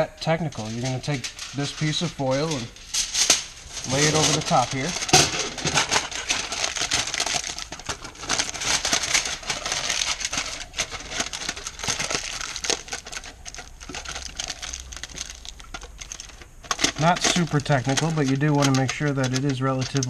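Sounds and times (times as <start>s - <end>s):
aluminium foil crinkling: 0.2s - 20.0s.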